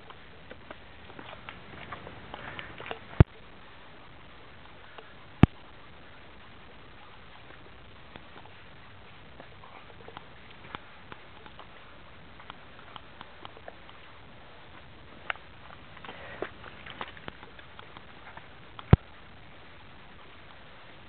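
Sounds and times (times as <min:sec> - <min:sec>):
footsteps on trail: 0:00.0 - 0:03.3, 0:07.0 - 0:19.7
steady low hiss: 0:00.0 - 0:21.0.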